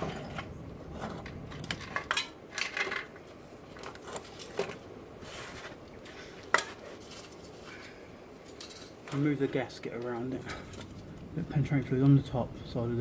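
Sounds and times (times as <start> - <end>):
metal tools clinking: 6.5 - 9.3.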